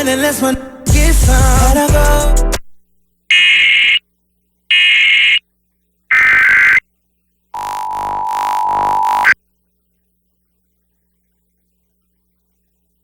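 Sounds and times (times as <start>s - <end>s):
warbling digital header tones: 3.3s - 4.0s, 4.7s - 5.4s, 6.1s - 6.8s, 7.6s - 9.4s
two-tone attention signal: 7.6s - 9.4s.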